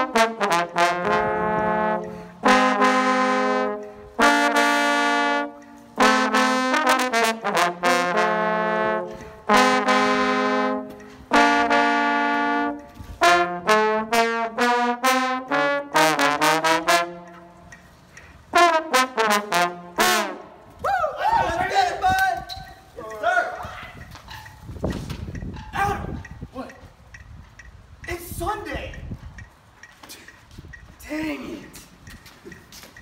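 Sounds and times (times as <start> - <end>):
solo brass instrument playing: 0.0 - 17.8, 18.5 - 20.7.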